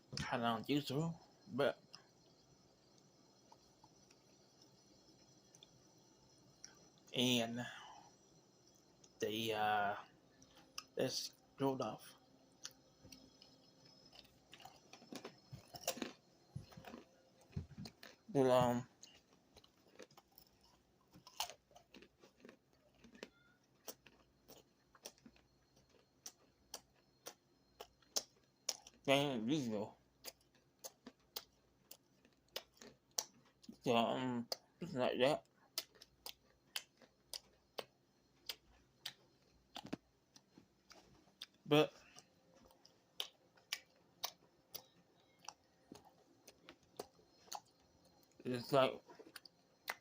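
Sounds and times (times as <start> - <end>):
faint clicks and crunches: 12.6 - 29.0, 35.8 - 50.0.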